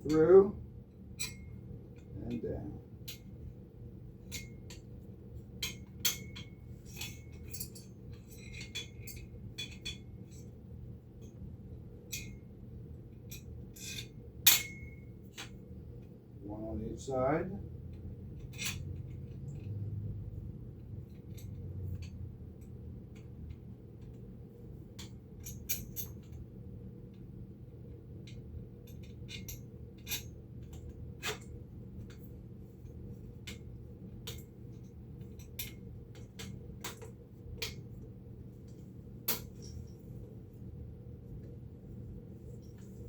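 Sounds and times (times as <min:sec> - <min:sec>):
steady low hum: 0:00.0 - 0:43.0
metal parts and tools clinking: 0:39.3 - 0:40.0.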